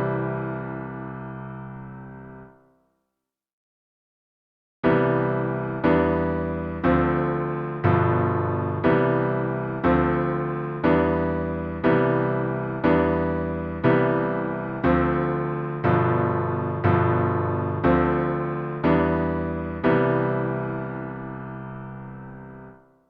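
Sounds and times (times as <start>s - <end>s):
piano chords ringing: 0.0s - 2.6s, 4.8s - 22.9s.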